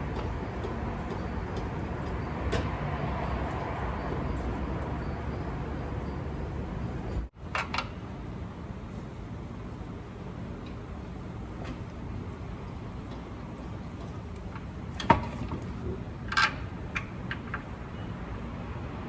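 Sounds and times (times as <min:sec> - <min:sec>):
metallic knocks: 0:00.0 - 0:05.4
workshop background noise: 0:00.0 - 0:08.2.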